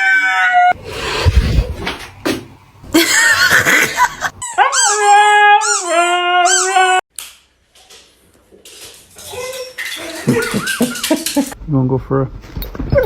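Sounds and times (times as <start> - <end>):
dog howling: 4.5 - 7.0.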